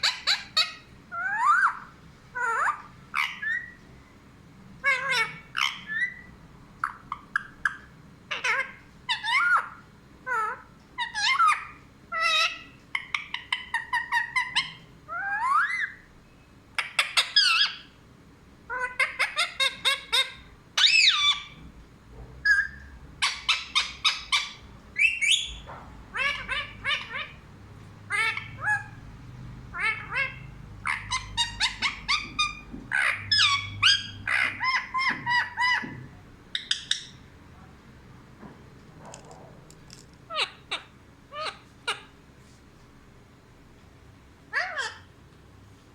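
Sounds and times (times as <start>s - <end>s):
parrot harsh calls: 0.0s - 3.8s, 4.8s - 16.1s, 16.8s - 18.0s, 18.7s - 21.6s, 22.5s - 27.4s, 28.1s - 29.0s, 29.7s - 37.2s, 40.3s - 42.2s, 44.5s - 45.1s.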